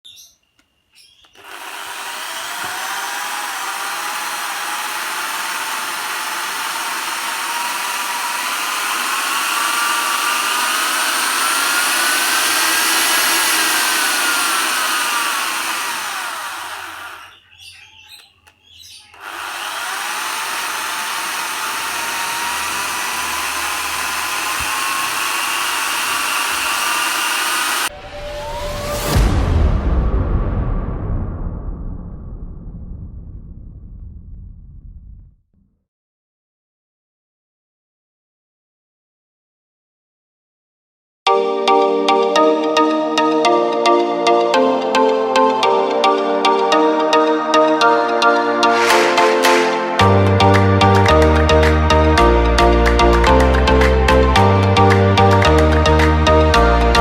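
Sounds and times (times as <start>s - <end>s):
power tool motor whine: 1.2s - 17.5s, 19.1s - 27.9s, 48.6s - 51.7s.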